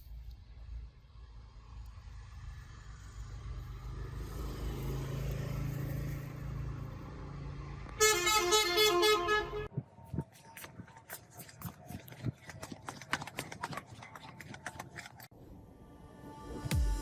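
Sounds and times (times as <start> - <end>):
vehicle rumble: 0.0 - 16.7
two-tone horn blasts: 8.0 - 9.7.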